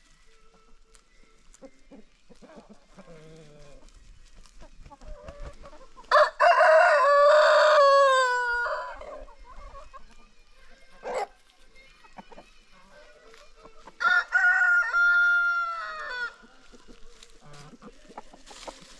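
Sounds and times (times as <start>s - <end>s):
hens clucking: 0.5s - 18.9s
rooster crowing: 6.1s - 9.2s, 14.0s - 16.4s.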